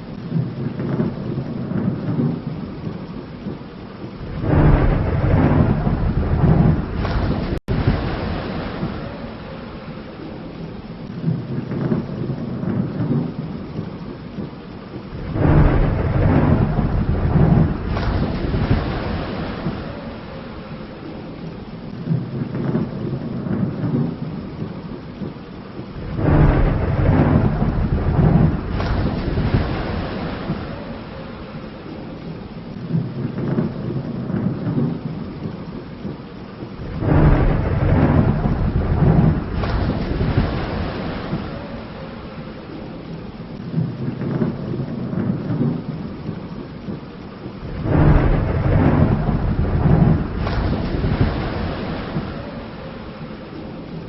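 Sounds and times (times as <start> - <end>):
steady rain: 0.0 - 54.0
thunder rumbling: 0.0 - 54.0.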